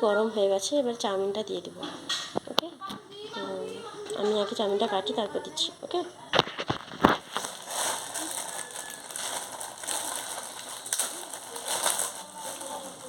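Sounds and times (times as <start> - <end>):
plastic packet crinkling: 6.3 - 13.0.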